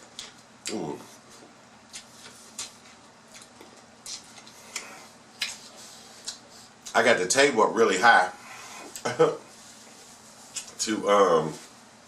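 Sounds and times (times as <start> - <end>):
person chewing food: 0.0 - 6.9.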